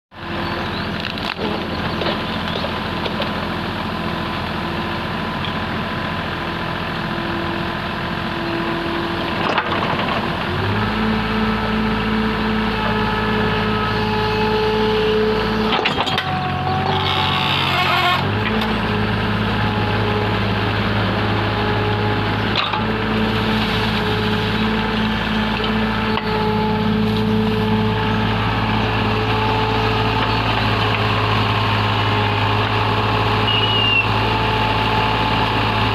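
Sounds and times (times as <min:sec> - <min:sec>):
diesel engine revving: 0:00.2 - 0:35.9.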